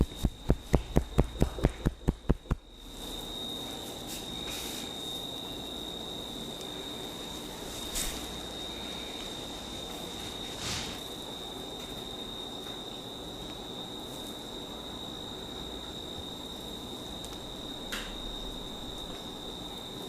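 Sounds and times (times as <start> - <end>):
high-pitched whine: 0.0 - 12.5
background hiss: 0.0 - 20.0.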